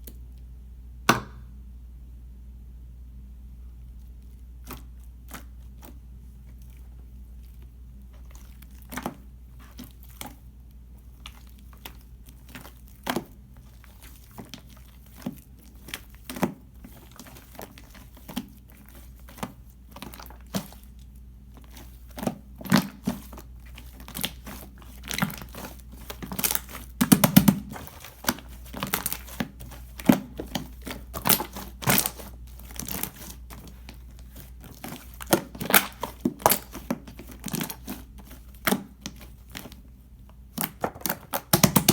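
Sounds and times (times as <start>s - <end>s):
slime crackling and popping: 11.2s - 39.8s, 40.5s - 41.9s.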